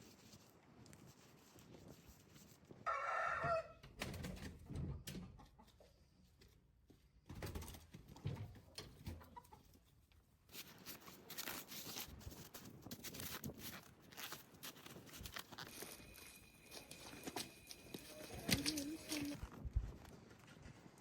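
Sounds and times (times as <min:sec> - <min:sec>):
chicken squawk: 0:02.9 - 0:03.7
rustling: 0:10.4 - 0:21.0.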